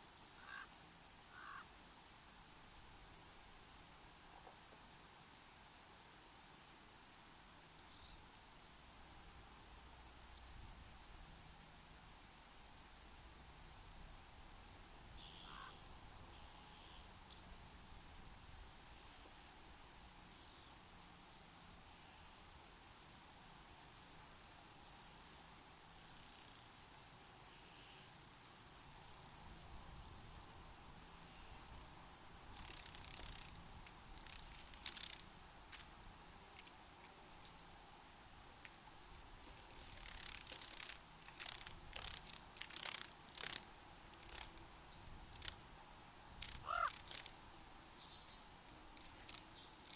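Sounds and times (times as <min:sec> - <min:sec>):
cricket chirping: 0:00.0 - 0:06.1, 0:15.2 - 0:37.6, 0:39.5 - 0:45.6, 0:46.4 - 0:47.4, 0:48.0 - 0:49.9
faint steady hush: 0:00.0 - 0:49.9
short hissy rattles: 0:32.4 - 0:37.7, 0:39.4 - 0:44.7, 0:45.3 - 0:45.6, 0:46.4 - 0:47.4, 0:48.9 - 0:49.9.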